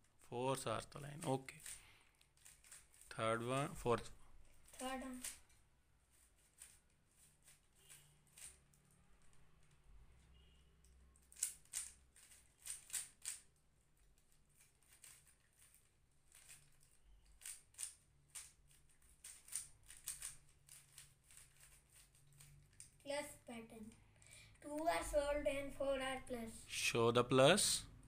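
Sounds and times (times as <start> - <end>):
plastic puzzle cube clicking: 1.1 - 3.1, 4.6 - 5.5, 6.4 - 9.7, 10.8 - 23.0.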